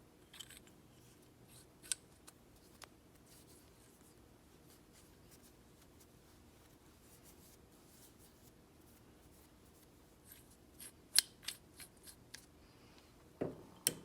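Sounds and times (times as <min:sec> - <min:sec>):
light metallic clicks and scrapes: 0:00.2 - 0:04.1.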